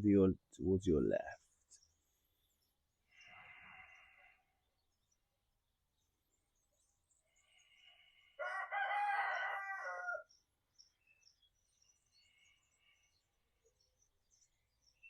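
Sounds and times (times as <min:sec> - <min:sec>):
small birds chirping: 0:00.0 - 0:15.0
rooster crowing: 0:08.4 - 0:10.3.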